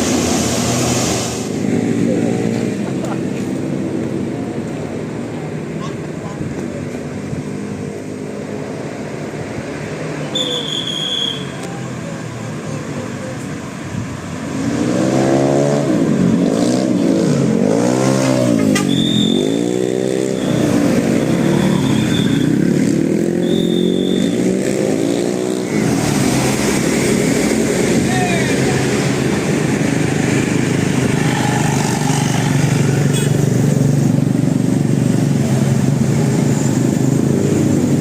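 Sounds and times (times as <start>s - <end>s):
traffic noise: 0.0s - 38.0s
high-pitched whistle blasts: 10.3s - 11.6s, 18.8s - 19.7s, 21.3s - 22.6s, 23.4s - 24.4s
vehicle engine revving: 14.4s - 38.0s.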